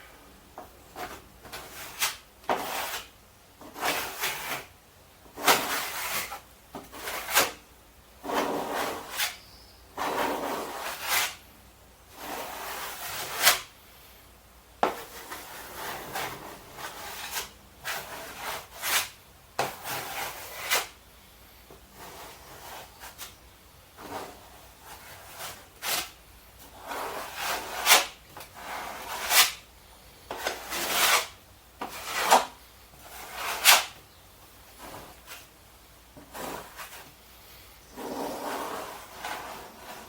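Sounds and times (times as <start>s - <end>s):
serrated scraper spreading adhesive: 1.0s - 4.7s, 5.3s - 7.6s, 8.2s - 9.4s, 10.0s - 11.4s, 12.1s - 13.7s, 14.8s - 21.0s, 24.0s - 29.6s, 30.3s - 34.0s, 36.2s - 37.1s, 38.0s - 40.0s.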